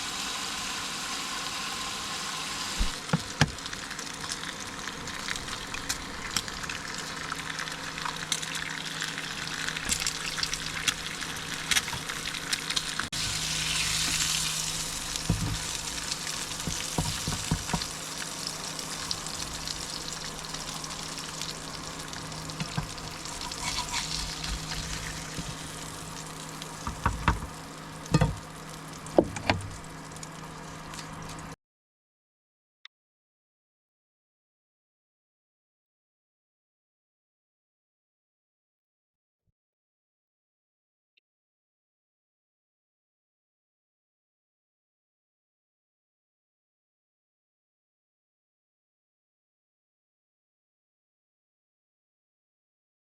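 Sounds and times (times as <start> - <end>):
bacon sizzling in a frying pan: 0.0 - 31.6
fat crackling and popping: 8.0 - 31.5.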